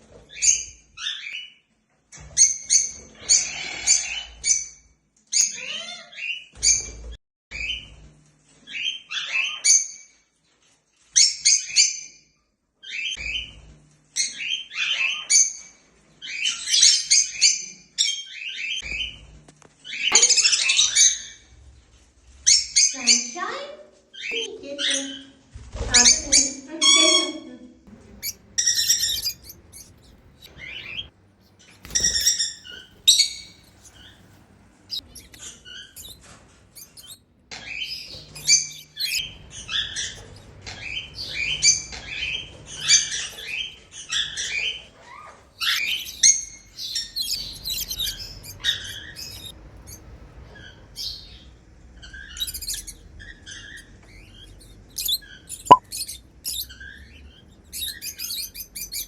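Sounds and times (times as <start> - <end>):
birds chirping and squawking: 27.9 - 59.0.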